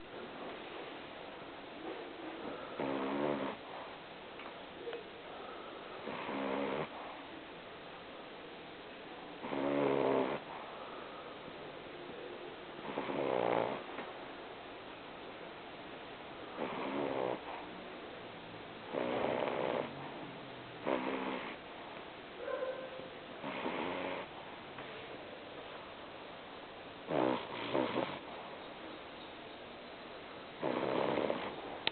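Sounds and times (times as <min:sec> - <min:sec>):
pet breathing quietly: 0:01.8 - 0:04.0
pet snoring: 0:02.4 - 0:03.7, 0:06.0 - 0:07.0, 0:09.4 - 0:10.5, 0:12.8 - 0:13.9, 0:16.5 - 0:17.7, 0:18.9 - 0:20.2, 0:20.8 - 0:21.6, 0:23.4 - 0:24.3, 0:27.0 - 0:28.3, 0:30.6 - 0:31.9.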